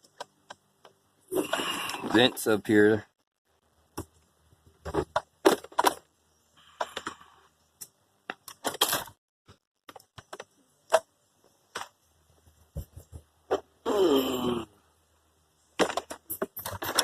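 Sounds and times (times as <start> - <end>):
tools clicking and rattling: 15.8 - 17.0.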